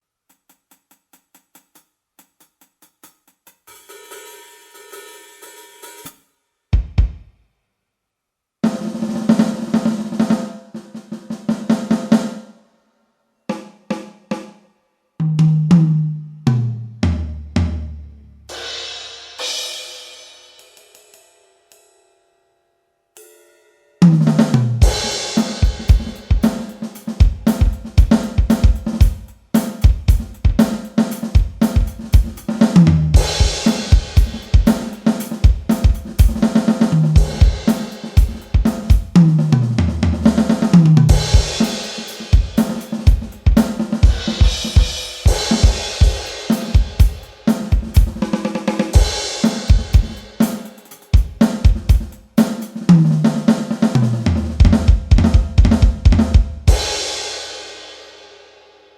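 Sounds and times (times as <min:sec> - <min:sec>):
electronic drum kit beat: 0:06.8 - 0:07.4, 0:24.2 - 0:57.0.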